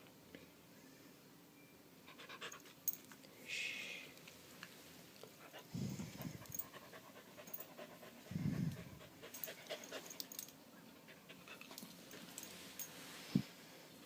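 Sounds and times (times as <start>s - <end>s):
dog panting: 5.4s - 12.2s.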